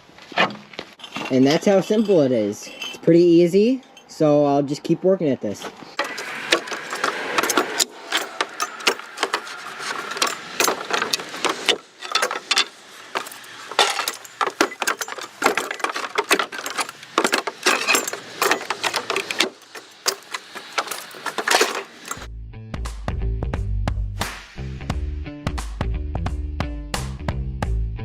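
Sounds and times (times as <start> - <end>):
wooden boards cracking: 6.0 - 22.2.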